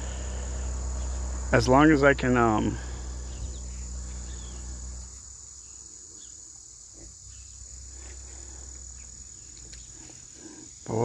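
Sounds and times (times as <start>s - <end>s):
low hum: 0.0s - 5.5s
crickets trilling: 0.0s - 11.0s.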